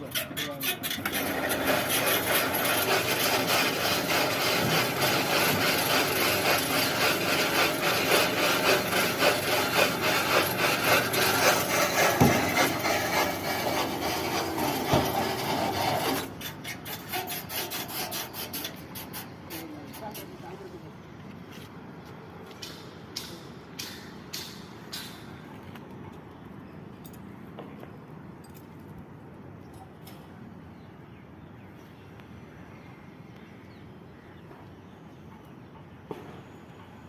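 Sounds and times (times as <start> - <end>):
electric hoist whirring: 1.0 - 16.4.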